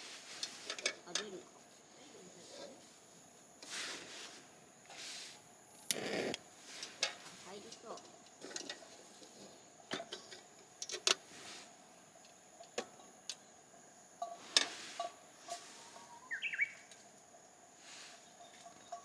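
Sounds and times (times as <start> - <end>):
faint steady hiss: 0.0 - 19.0
bird chirping: 15.8 - 17.0.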